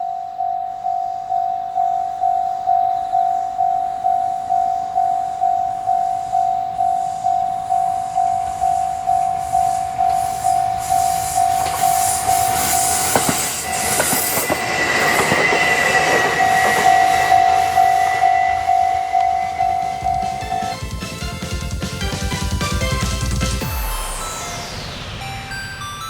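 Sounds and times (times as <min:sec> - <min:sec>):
thin high whine: 0:00.0 - 0:20.8
level crossing warning bell: 0:00.0 - 0:21.0, 0:21.6 - 0:26.0
train wheels clattering on rails: 0:07.2 - 0:23.7.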